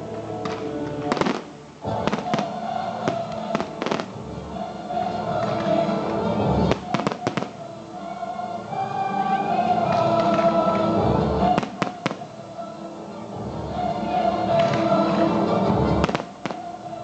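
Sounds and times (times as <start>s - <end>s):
music with long held notes: 0.0s - 17.0s
fireworks bangs: 0.4s - 4.3s, 6.5s - 7.7s, 11.4s - 12.4s, 16.0s - 17.0s.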